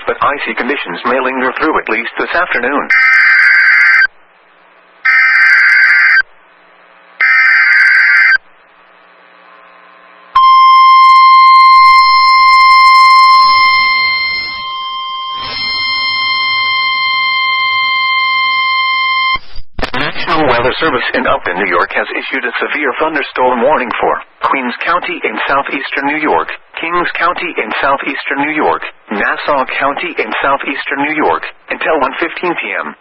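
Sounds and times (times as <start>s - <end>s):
steady alarm tone: 2.9s - 4.1s, 5.0s - 6.2s, 7.2s - 8.4s, 10.4s - 19.5s.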